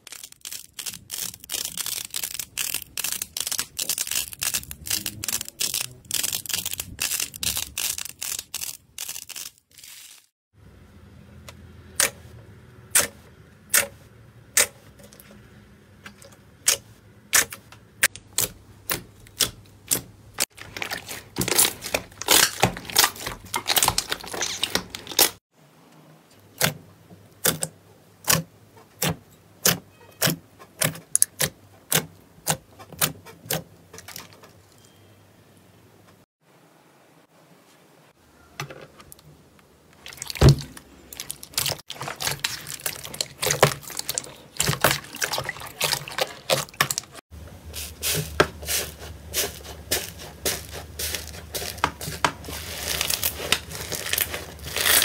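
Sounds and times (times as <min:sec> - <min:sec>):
slime crackling and popping: 0:00.0 - 0:10.2, 0:18.3 - 0:25.4, 0:50.0 - 0:55.0.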